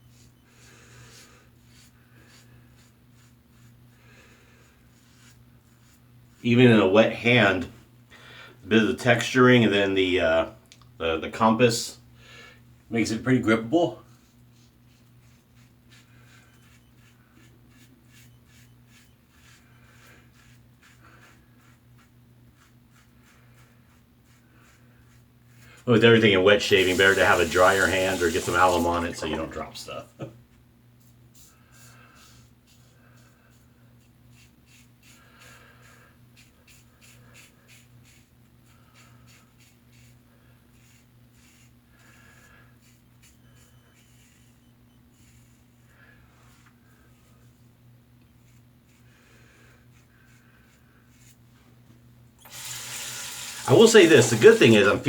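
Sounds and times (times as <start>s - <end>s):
razor scratching skin: 1.1s - 3.9s, 14.5s - 25.6s, 26.3s - 29.1s, 36.4s - 45.9s, 52.5s - 55.0s
steady low hum: 10.4s - 52.5s
razor scraping stubble: 25.9s - 29.7s, 52.5s - 55.0s.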